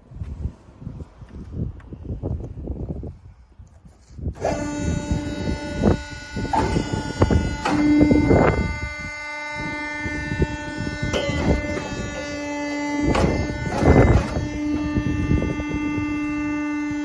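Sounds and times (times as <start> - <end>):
briquetting press whining: 4.4 - 17.0.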